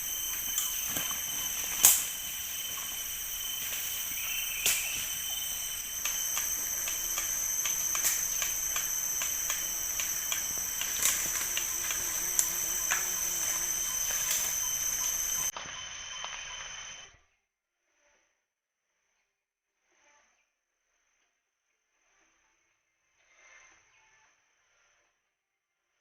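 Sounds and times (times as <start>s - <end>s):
sharp clicks and snaps: 0.0s - 16.8s
insects droning: 0.0s - 17.1s.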